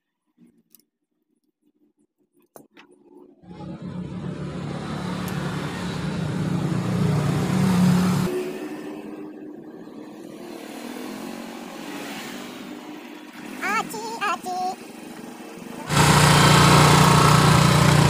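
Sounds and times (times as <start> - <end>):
vehicle engine running: 3.4 - 8.3, 15.1 - 18.0
steady engine hum: 3.4 - 11.2, 12.6 - 18.0.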